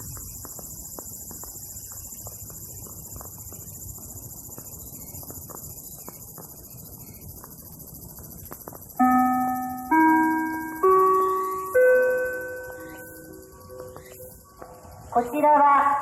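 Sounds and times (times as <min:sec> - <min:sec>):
loudspeaker chime: 0:09.0 - 0:13.2
insects shrilling: 0:09.8 - 0:16.0.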